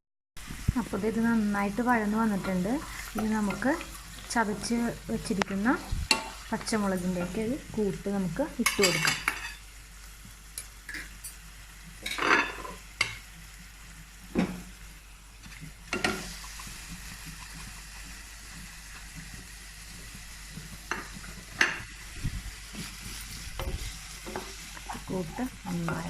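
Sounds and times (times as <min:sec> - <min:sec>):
chilli mix sizzling in oil: 0:00.4 - 0:26.0
spoon scraping pan: 0:01.4 - 0:07.6, 0:22.7 - 0:26.0.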